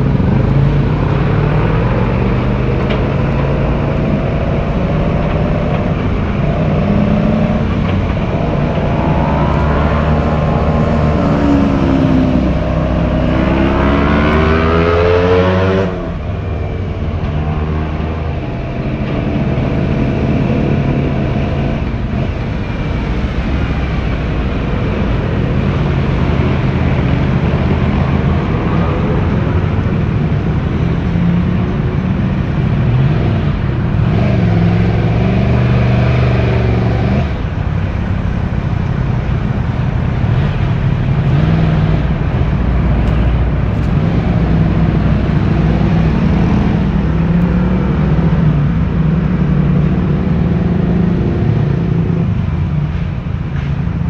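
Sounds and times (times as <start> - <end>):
motorcycle engine revving: 0.0 - 37.8.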